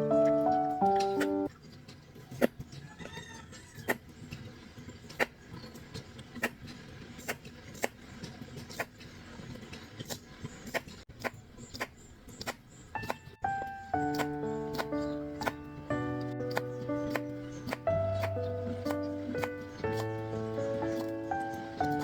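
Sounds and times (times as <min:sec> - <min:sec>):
musical notes: 0:00.0 - 0:01.5, 0:13.0 - 0:22.0.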